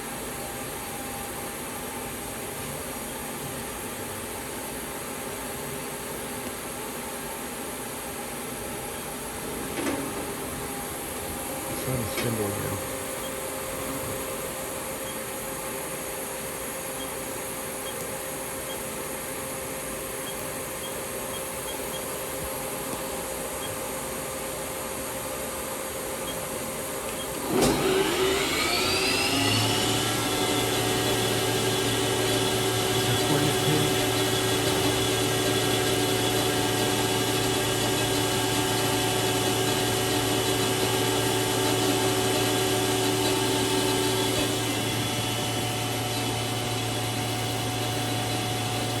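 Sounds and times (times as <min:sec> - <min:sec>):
spindle whine spinning up: 0:27.3 - 0:49.0
lathe machine hum: 0:27.4 - 0:49.0.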